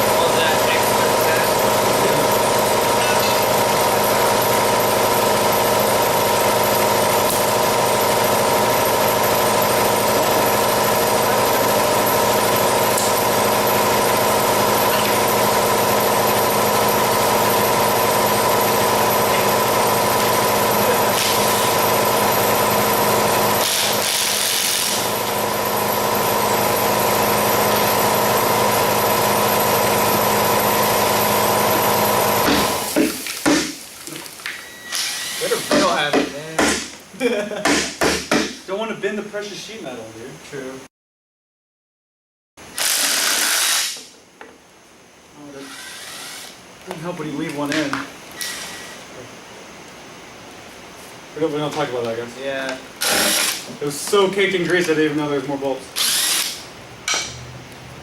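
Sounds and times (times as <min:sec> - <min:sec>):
motor humming: 0:00.0 - 0:33.0, 0:56.0 - 0:56.6.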